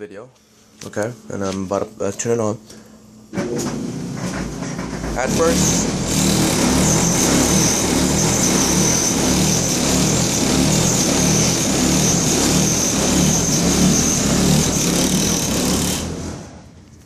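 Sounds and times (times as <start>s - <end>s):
clothes dryer grinding: 3.3s - 16.8s.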